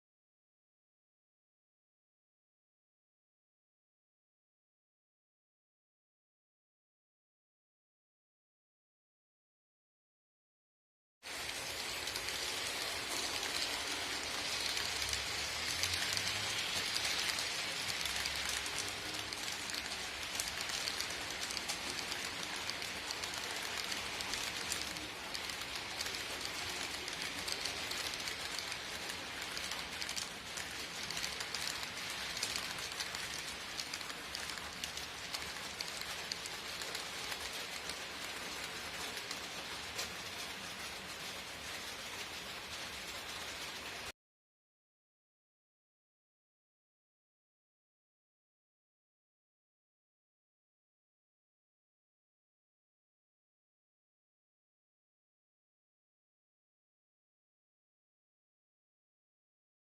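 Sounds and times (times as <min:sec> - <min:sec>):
model train wheels rattling on rail: 0:11.3 - 0:44.1.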